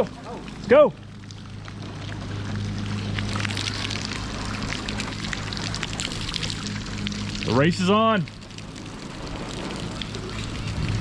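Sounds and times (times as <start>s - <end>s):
boat motor running: 0.0s - 11.0s
water rushing along hull: 0.0s - 11.0s.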